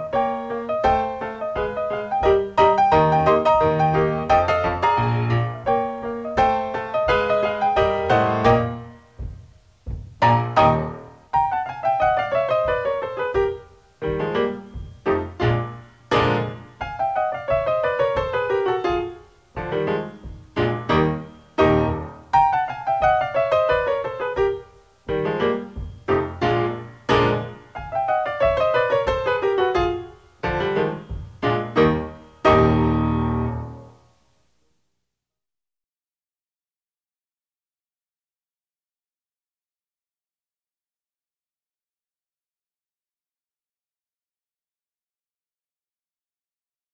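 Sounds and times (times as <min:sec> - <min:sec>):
solo piano music: 0:00.0 - 0:34.4.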